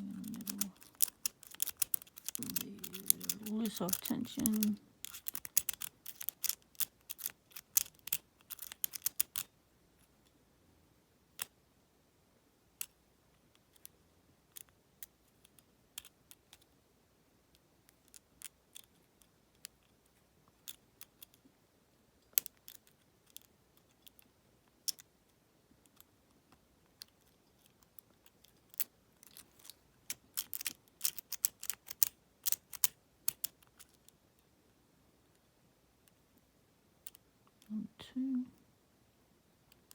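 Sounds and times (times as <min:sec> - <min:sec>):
lock pick clicking in padlock: 0:00.2 - 0:09.5, 0:30.3 - 0:34.0.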